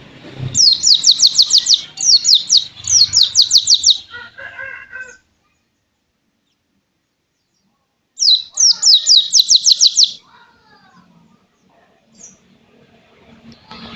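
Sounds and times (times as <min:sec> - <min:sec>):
bird singing high notes: 0:00.6 - 0:04.1, 0:08.2 - 0:10.2.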